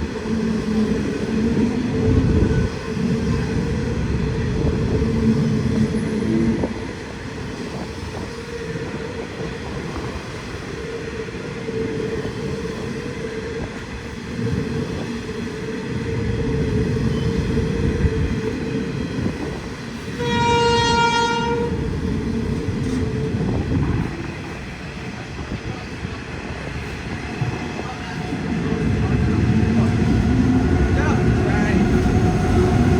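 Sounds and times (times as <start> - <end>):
freight train rumbling: 0.0 - 32.9
train horn: 20.1 - 21.8.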